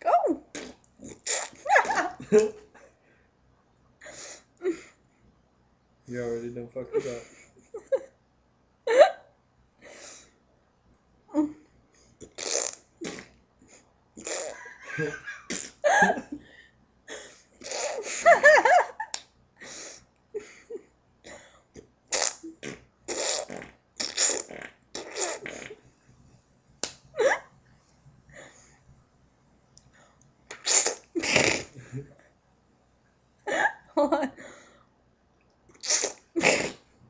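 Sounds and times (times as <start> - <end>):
people imitating farts: 0.5 - 2.2, 12.2 - 13.3, 14.2 - 14.7, 15.5 - 15.8, 17.6 - 18.2, 22.1 - 25.8, 30.5 - 31.9, 35.8 - 36.8.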